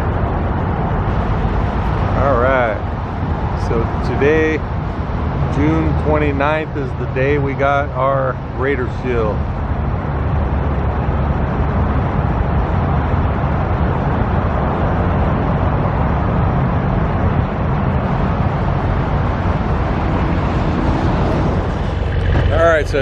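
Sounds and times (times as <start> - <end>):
motor vehicle rumble: 0.0 - 23.0.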